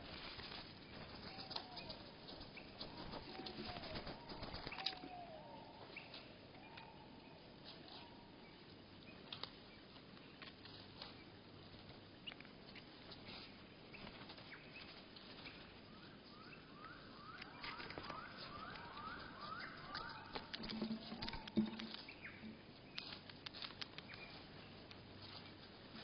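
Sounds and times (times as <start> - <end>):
slowed bird ticks and clicks: 12.2 - 12.9, 16.8 - 25.0
slowed rising bird chirps: 16.3 - 23.0.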